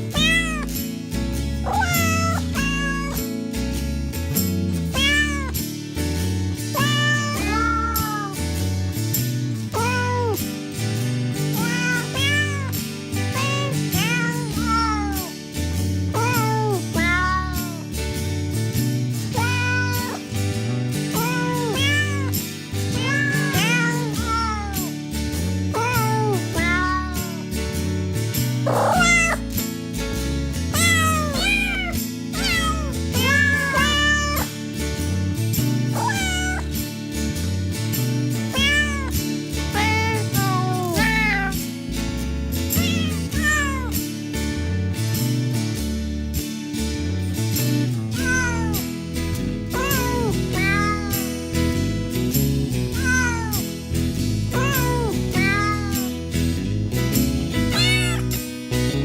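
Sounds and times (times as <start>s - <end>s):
cat meowing: 0.0s - 0.8s, 1.7s - 3.3s, 4.9s - 5.6s, 6.7s - 8.4s, 9.7s - 10.4s, 11.6s - 15.3s, 16.1s - 17.9s, 19.4s - 20.2s, 21.1s - 25.0s, 25.7s - 27.5s, 28.7s - 29.4s, 30.7s - 34.5s, 35.9s - 36.7s, 38.5s - 41.6s, 42.8s - 44.0s, 48.1s - 48.9s, 49.7s - 51.3s, 52.9s - 53.7s, 54.5s - 56.1s, 57.7s - 58.4s.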